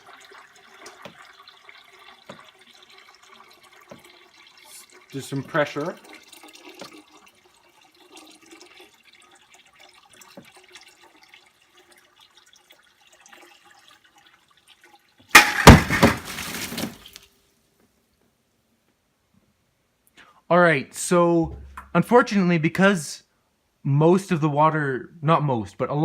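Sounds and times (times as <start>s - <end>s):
water trickling into bucket: 0.0s - 17.3s
bucket crashing and water splashing: 15.3s - 17.2s.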